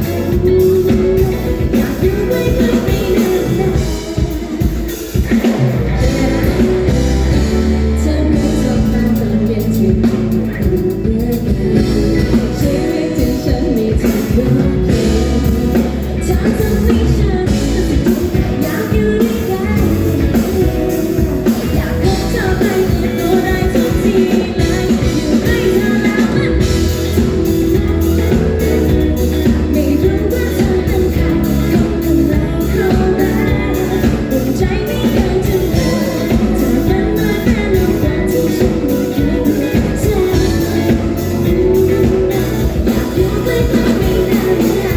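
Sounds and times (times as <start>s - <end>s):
band playing pop-rock: 0.0s - 44.9s
steady drum beat: 0.0s - 44.9s
woman singing: 0.0s - 44.9s.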